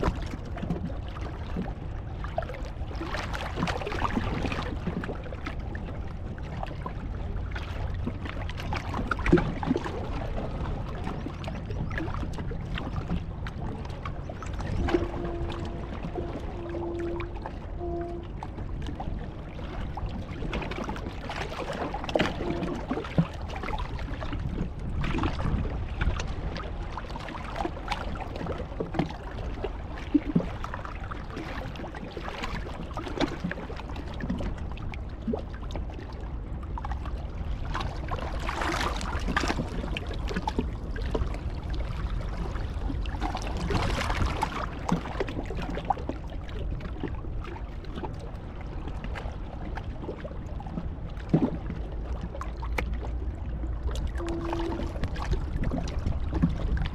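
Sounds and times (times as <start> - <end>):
wind on the microphone: 0.0 - 56.9
sea surf washing ashore: 13.7 - 20.9.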